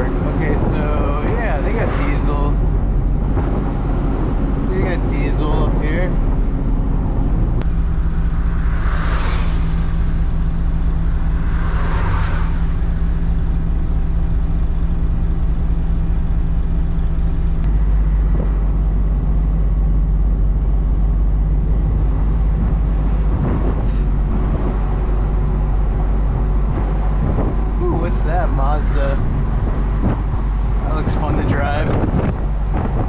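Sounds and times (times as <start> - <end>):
truck diesel engine drone: 0.0 - 33.0
whooshes: 7.1 - 13.8, 21.5 - 33.0.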